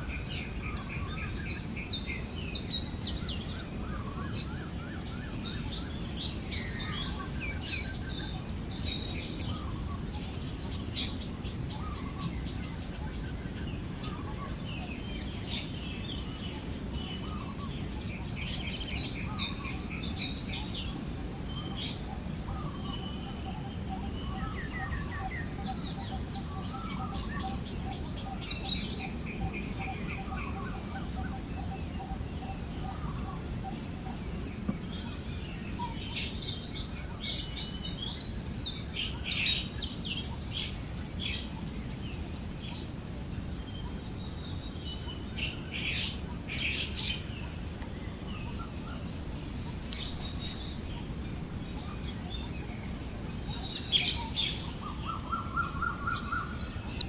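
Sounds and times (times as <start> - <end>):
birds chirping and calling: 45.0 - 57.0.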